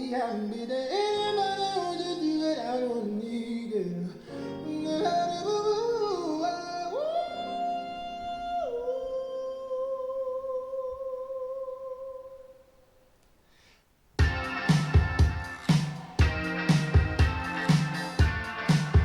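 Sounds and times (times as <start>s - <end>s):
song through speakers: 0.0s - 9.9s, 14.2s - 19.0s.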